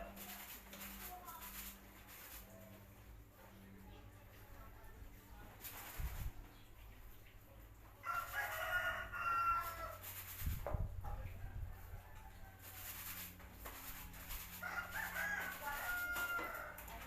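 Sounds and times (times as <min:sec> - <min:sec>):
rooster crowing: 0:08.0 - 0:10.0, 0:14.6 - 0:16.9.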